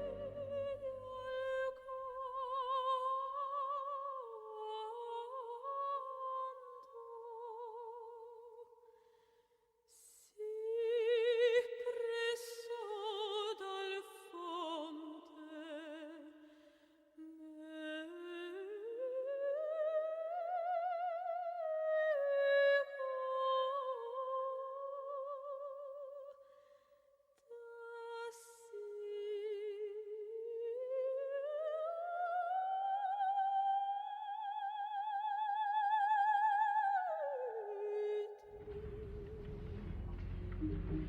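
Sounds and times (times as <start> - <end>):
operatic high voice singing: 0.0 - 8.3, 27.7 - 41.0.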